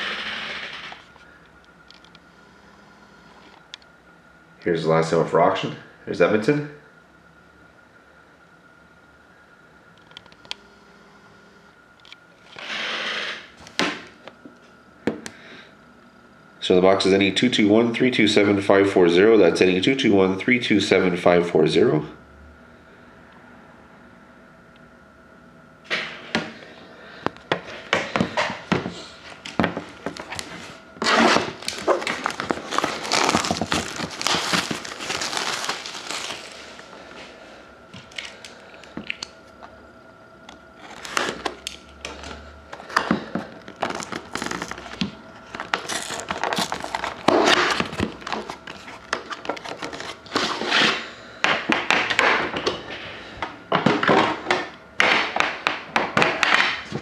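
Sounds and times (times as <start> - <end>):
wrapping crinkling and tearing: 30.1 - 36.9, 38.0 - 39.3, 40.8 - 50.7.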